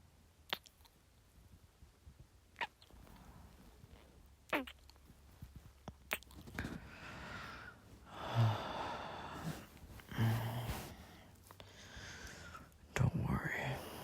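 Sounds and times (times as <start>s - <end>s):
mouth clicks: 0.5s - 1.0s, 2.6s - 2.9s, 4.5s - 5.0s, 5.8s - 6.6s
sighing breaths: 6.6s - 12.7s.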